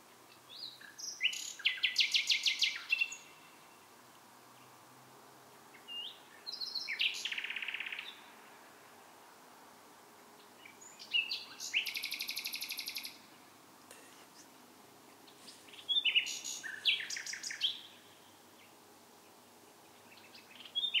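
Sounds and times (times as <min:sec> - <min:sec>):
songbird singing: 0:00.0 - 0:09.1, 0:10.3 - 0:13.6, 0:14.2 - 0:21.0.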